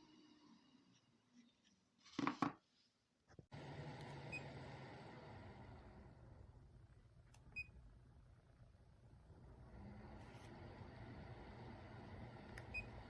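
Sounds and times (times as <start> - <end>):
air purifier fan hissing: 3.5 - 6.8, 9.1 - 13.0.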